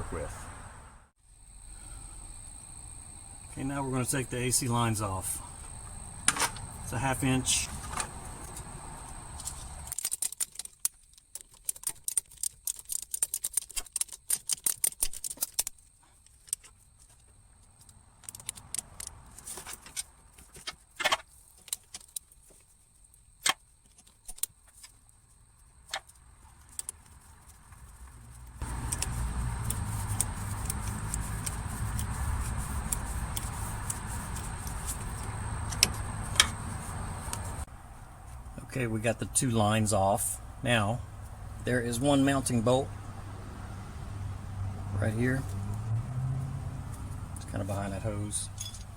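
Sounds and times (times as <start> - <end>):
ratchet clicking: 28.6 - 35.0
metal clinks of wrench and bolts: 48.4 - 48.9.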